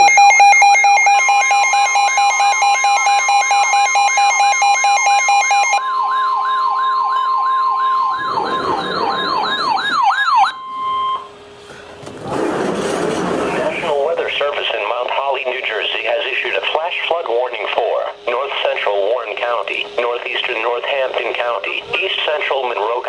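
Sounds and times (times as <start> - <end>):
siren yelping: 0.0 - 11.5
high warning tone: 0.0 - 11.6
warbling electronic alarm: 0.0 - 11.6.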